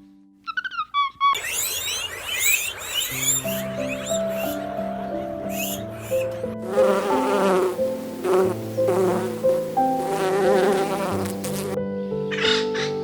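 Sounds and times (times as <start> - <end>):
insect buzzing: 1.4 - 4.6, 5.5 - 11.8
background music: 3.1 - 13.0.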